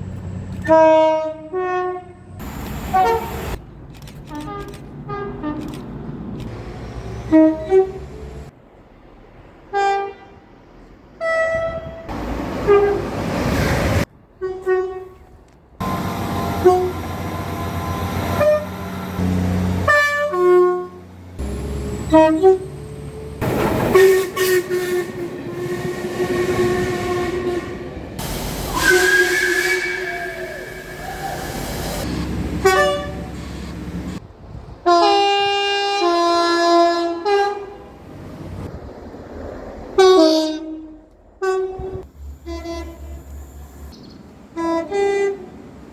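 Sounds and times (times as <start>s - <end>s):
rumble of trains passing: 0.0s - 45.9s
train horn blasts: 0.6s - 2.3s, 2.9s - 3.5s, 7.2s - 8.3s, 11.2s - 13.2s, 14.4s - 22.8s, 23.8s - 34.2s, 34.9s - 37.9s, 40.0s - 43.9s, 44.5s - 45.6s.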